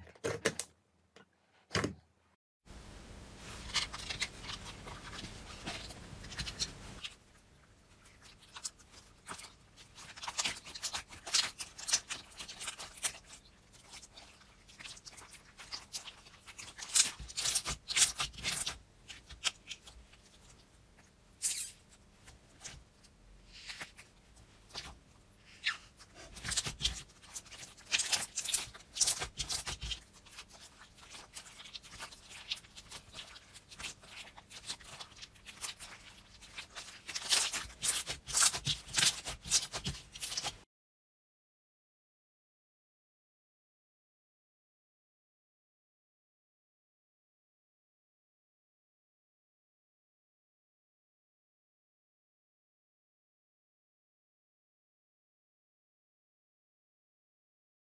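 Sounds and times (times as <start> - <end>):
slime squished by hand: 25.6 - 40.6.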